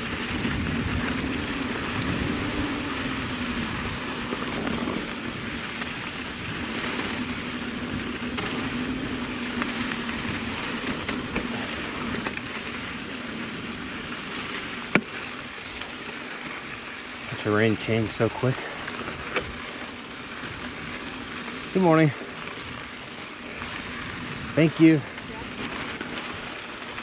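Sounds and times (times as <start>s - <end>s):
small rattles: 0.0s - 16.6s
bike tyres rolling on dirt: 0.0s - 27.0s.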